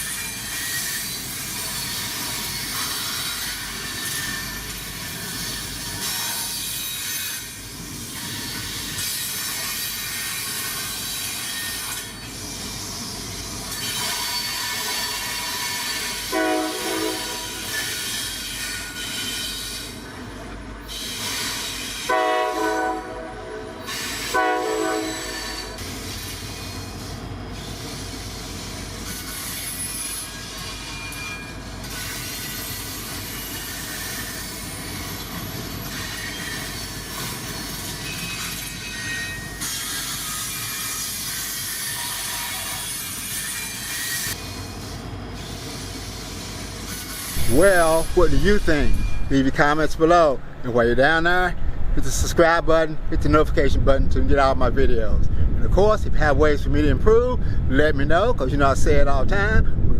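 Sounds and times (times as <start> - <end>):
wheels squealing on rails: 0.0 - 50.4
train passing: 0.0 - 59.9
train horn: 16.3 - 17.8, 22.0 - 25.7.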